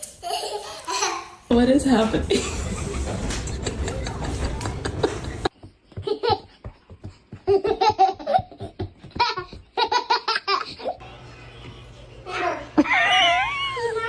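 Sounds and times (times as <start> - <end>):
baby laughing: 0.2 - 1.4, 2.3 - 6.6, 7.4 - 11.0.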